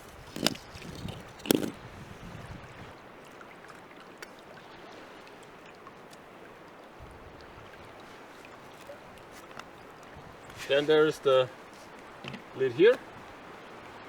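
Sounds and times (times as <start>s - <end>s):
lake water lapping: 0.0s - 14.0s.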